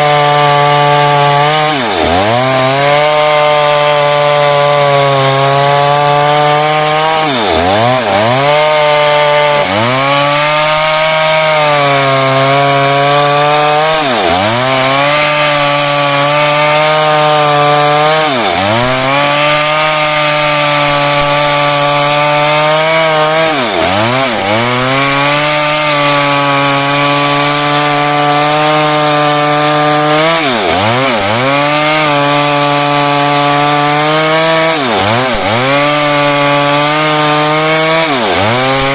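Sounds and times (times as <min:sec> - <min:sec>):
chainsaw cutting wood: 0:00.0 - 0:38.9.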